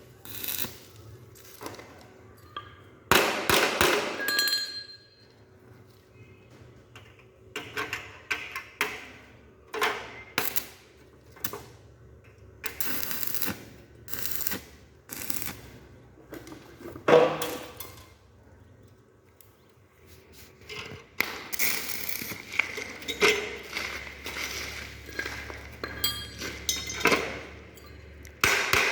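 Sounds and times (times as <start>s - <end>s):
metal clinks and knocks: 21.8s - 28.4s.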